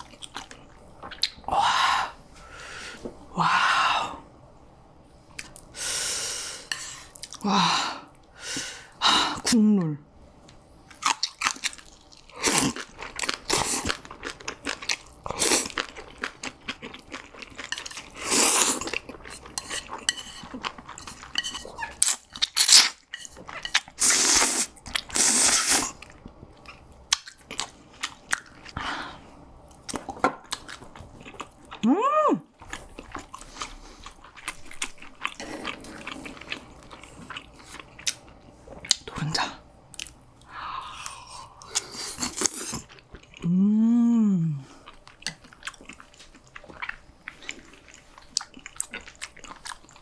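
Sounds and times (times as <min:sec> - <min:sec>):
chewing and crunching food: 0:00.0 - 0:01.5, 0:10.8 - 0:28.9, 0:29.6 - 0:31.9, 0:32.6 - 0:43.5, 0:44.8 - 0:50.0
person humming: 0:31.8 - 0:32.5, 0:43.4 - 0:44.8.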